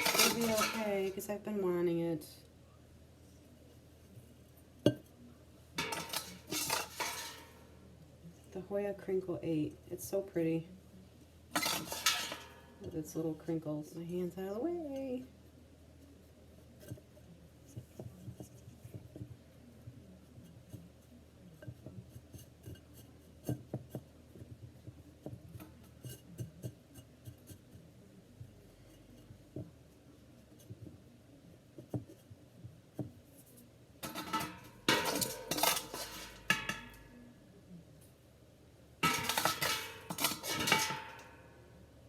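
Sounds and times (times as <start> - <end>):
soil scraping and rustling: 0.0 - 1.4, 5.8 - 7.7, 11.6 - 12.6, 33.4 - 37.0, 39.0 - 41.4.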